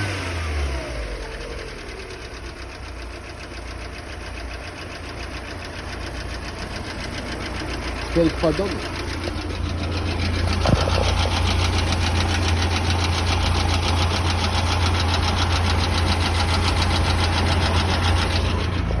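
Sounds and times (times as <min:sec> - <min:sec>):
engine running with rapid knock: 0:00.1 - 0:19.0.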